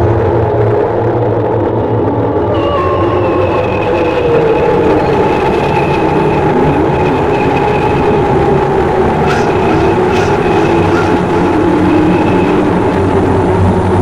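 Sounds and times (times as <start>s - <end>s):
loud rumbling wash: 0.0s - 14.0s
held wavering tones: 2.3s - 8.6s.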